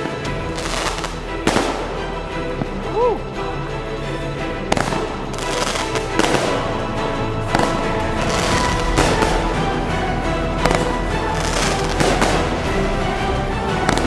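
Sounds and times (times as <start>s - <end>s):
firework bangs: 0.0s - 2.8s, 4.7s - 6.8s, 7.4s - 9.6s, 10.6s - 13.0s, 13.8s - 14.0s
background music with steady beat: 0.0s - 14.0s.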